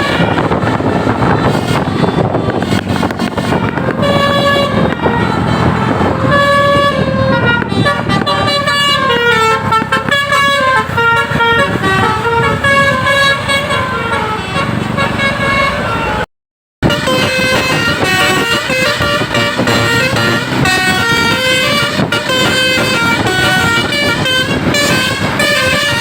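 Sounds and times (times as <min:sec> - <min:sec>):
bus musical horn tune: 0:00.0 - 0:26.0
engine and road noise: 0:00.0 - 0:26.0.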